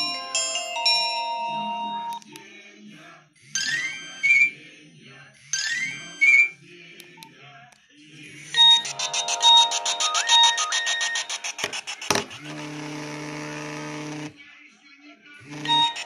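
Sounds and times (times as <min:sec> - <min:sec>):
electronic ringtone phrase: 0:00.0 - 0:02.3, 0:03.6 - 0:04.6, 0:05.5 - 0:06.6, 0:08.6 - 0:11.7, 0:15.5 - 0:16.0
pulsing ringtone: 0:00.0 - 0:02.3, 0:03.5 - 0:04.8, 0:05.4 - 0:06.6, 0:08.6 - 0:13.8, 0:15.4 - 0:16.0.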